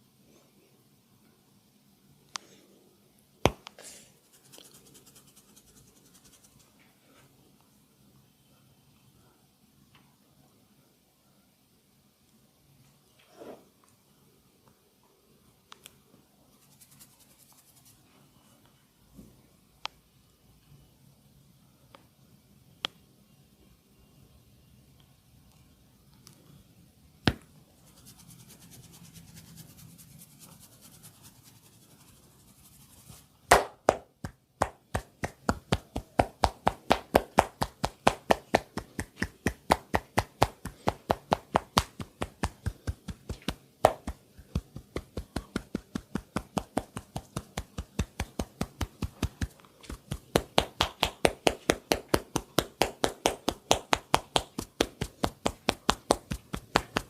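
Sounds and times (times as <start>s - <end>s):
hands slapping skin: 33.5s - 57.0s.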